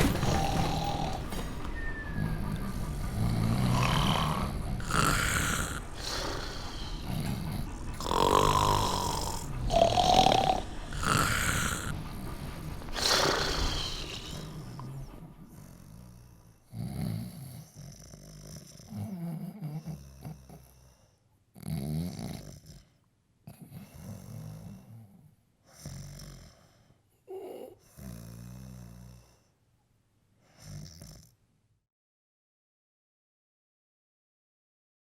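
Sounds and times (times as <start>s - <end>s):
person snoring: 0.0s - 21.0s, 27.3s - 29.4s.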